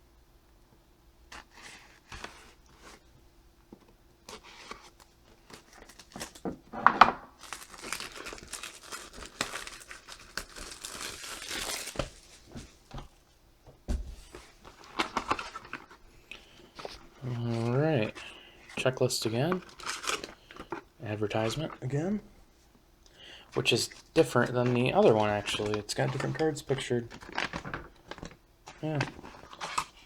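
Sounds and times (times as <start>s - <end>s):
cellophane ripping: 4.3s - 6.4s, 7.4s - 12.5s, 19.4s - 20.8s, 25.0s - 30.0s
cellophane crinkling: 4.3s - 6.5s, 7.3s - 13.1s, 14.2s - 22.2s, 23.6s - 30.0s.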